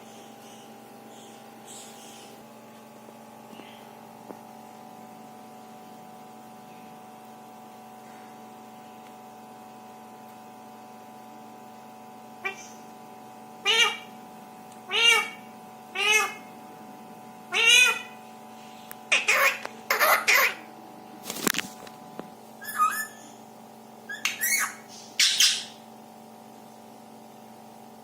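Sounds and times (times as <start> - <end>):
electrical hum: 0.0 - 28.0
parrot meow-like calls: 12.4 - 12.8, 13.6 - 14.1, 14.9 - 15.4, 16.0 - 16.4, 17.5 - 18.2, 22.6 - 23.2, 24.1 - 25.7.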